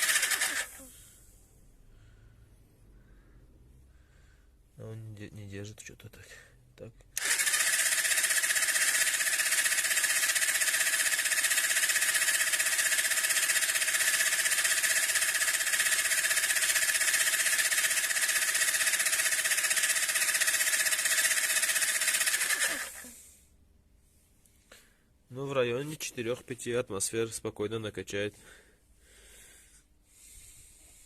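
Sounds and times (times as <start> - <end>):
air compressor running with rapid pulsing: 0.0 - 0.9, 7.2 - 23.2.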